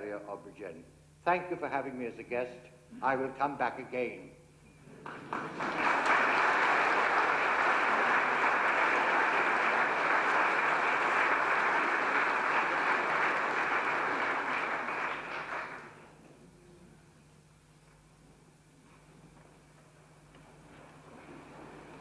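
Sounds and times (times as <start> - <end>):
congregation applauding: 5.0 - 16.2.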